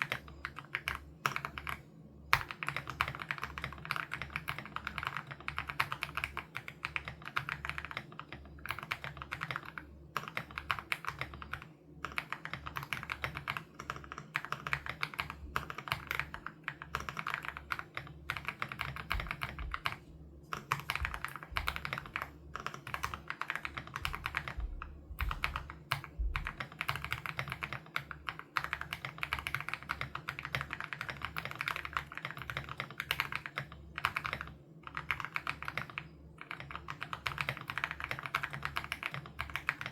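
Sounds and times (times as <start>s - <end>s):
fast typing on mechanical keyboard: 0.0s - 39.9s.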